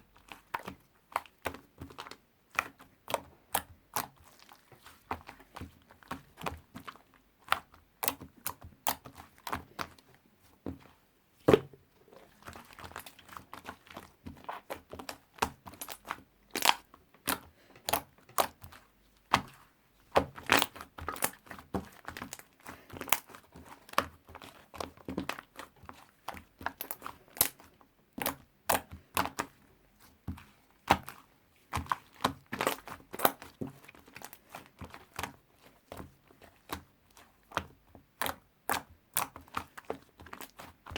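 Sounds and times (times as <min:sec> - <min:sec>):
slime crackling and popping: 0:12.4 - 0:19.6, 0:20.2 - 0:29.6, 0:30.8 - 0:40.9.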